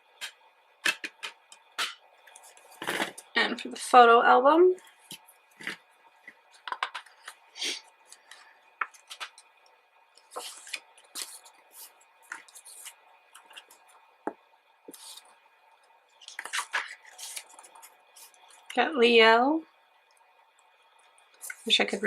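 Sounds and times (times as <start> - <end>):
album pages turning: 0.2 - 3.2, 8.0 - 9.4, 10.2 - 13.9, 14.9 - 15.3, 16.2 - 18.7.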